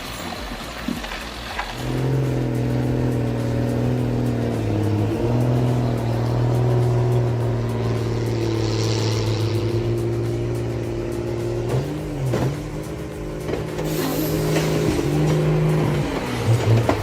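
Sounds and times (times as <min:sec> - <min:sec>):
diesel engine running under load: 0:00.0 - 0:17.0
short hiss: 0:13.8 - 0:15.0.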